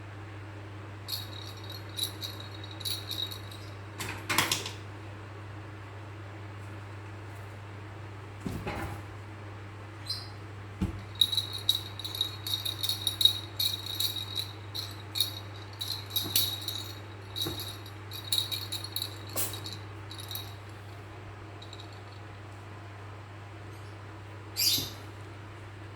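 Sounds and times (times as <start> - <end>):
small rattle shaken: 1.0 - 3.9, 11.0 - 21.0, 21.6 - 22.4.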